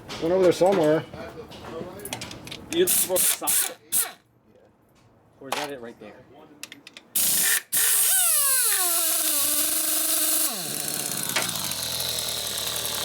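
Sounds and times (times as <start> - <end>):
pneumatic impact wrench hammering: 2.9 - 4.2, 7.2 - 13.0.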